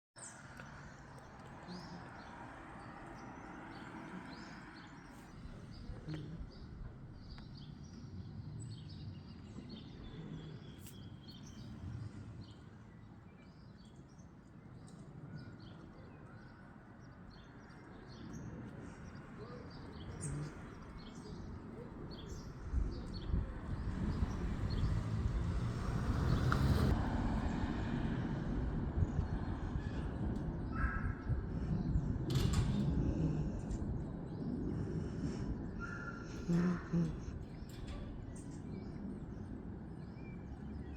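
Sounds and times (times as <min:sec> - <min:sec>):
birds chirping: 0:00.2 - 0:27.6, 0:28.3 - 0:40.9
jet engine rumble: 0:20.0 - 0:40.9.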